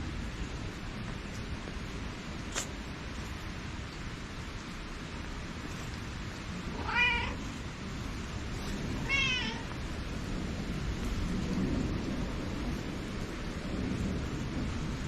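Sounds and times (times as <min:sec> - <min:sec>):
background hiss: 0:00.0 - 0:15.0
cat meowing: 0:06.7 - 0:07.6, 0:09.0 - 0:09.8.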